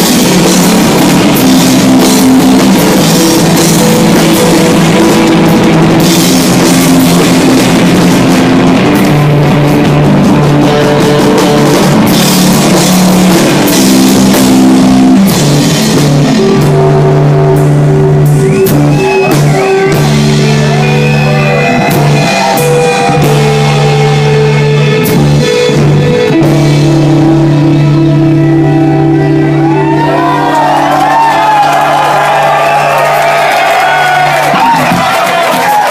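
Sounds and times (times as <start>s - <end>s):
rock band playing: 0.0s - 35.9s.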